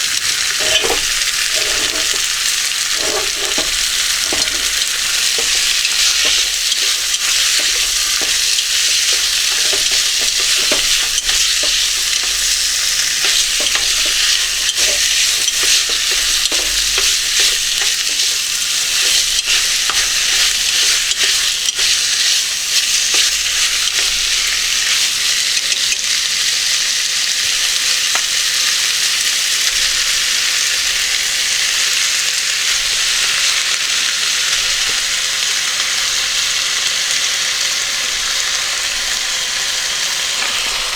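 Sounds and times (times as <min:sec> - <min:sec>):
utensil clicking on a pan: 0:00.0 - 0:27.1
food sizzling in a frying pan: 0:00.0 - 0:40.9.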